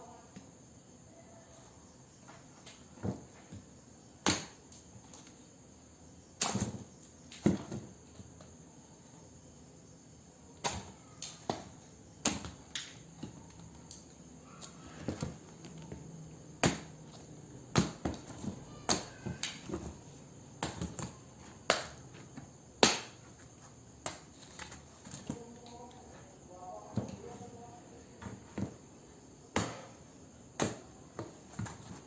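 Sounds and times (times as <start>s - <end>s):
knife chopping watermelon: 16.6s - 20.0s.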